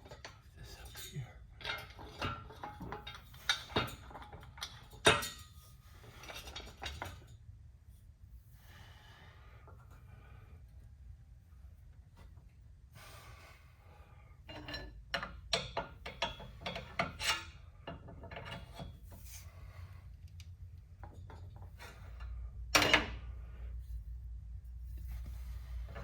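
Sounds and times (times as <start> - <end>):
metal parts scraping and clinking: 14.5 - 19.0.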